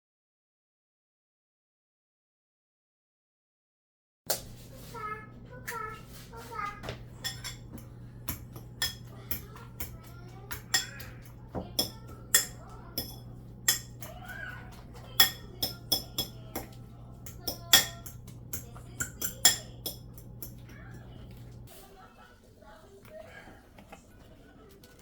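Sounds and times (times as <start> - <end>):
steady low hum: 4.3 - 21.7
metal utensils clinking on dishes: 6.5 - 21.6.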